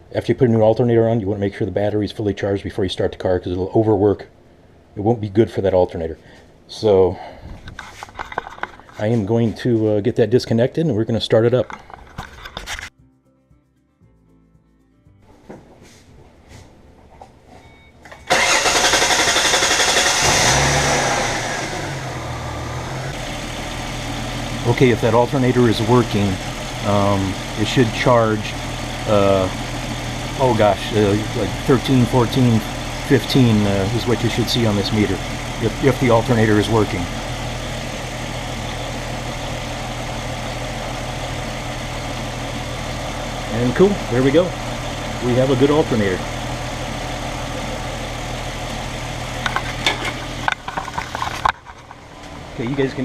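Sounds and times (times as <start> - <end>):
car engine starting and idling: 18.1 - 53.0.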